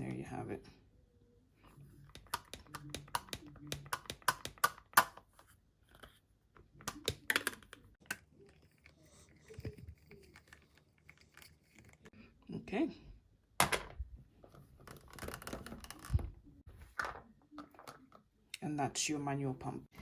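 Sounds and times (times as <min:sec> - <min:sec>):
plastic parts clicking together: 0:02.1 - 0:08.9.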